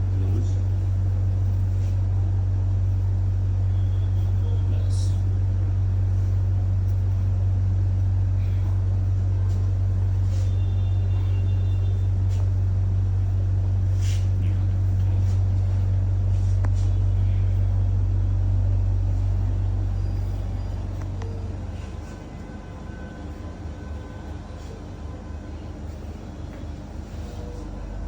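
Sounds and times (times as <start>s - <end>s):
low motor hum: 0.0s - 28.0s.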